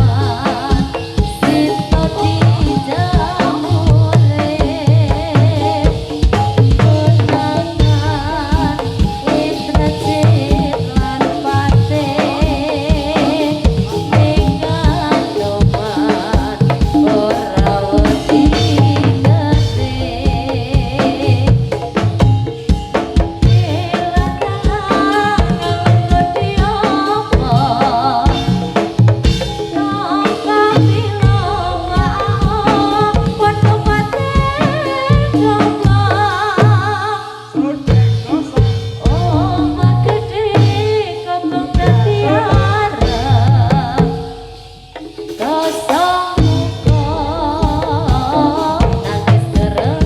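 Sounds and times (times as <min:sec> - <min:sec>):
wavering melodic line: 0:00.0 - 0:35.6
hand drums beating: 0:00.0 - 0:50.0
metallophone tones: 0:00.0 - 0:50.0.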